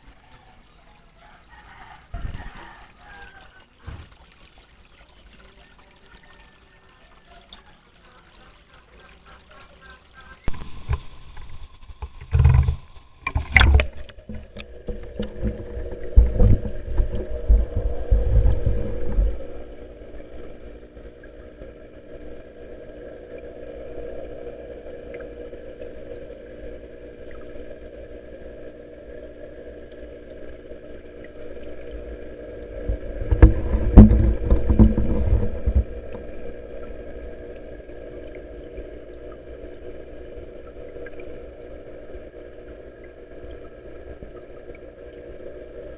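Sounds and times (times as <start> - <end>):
low rumbles on microphone: 13.5 - 21.3, 32.0 - 37.6.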